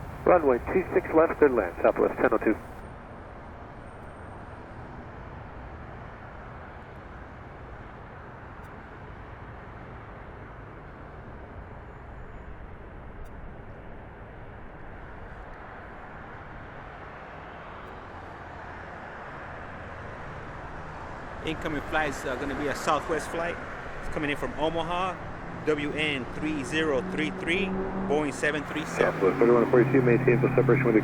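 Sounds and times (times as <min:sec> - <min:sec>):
distant jet engine noise: 0:00.0 - 0:02.8, 0:21.4 - 0:31.0.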